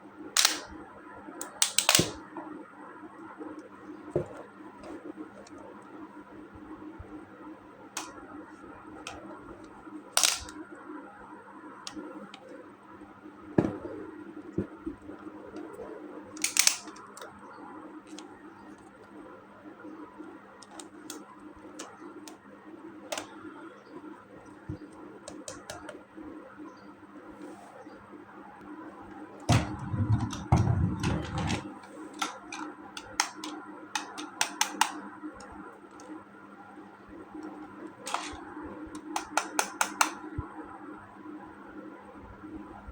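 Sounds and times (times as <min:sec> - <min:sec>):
plastic toy pieces clicking: 0:10.2 - 0:10.5, 0:16.4 - 0:17.0, 0:32.2 - 0:35.0
plastic clicks and taps: 0:32.2 - 0:36.1, 0:39.0 - 0:40.2.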